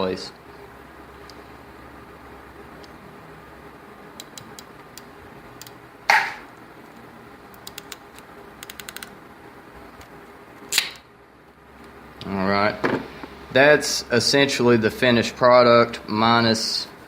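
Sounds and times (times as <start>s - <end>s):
sharp clicks of small parts: 7.6s - 9.1s.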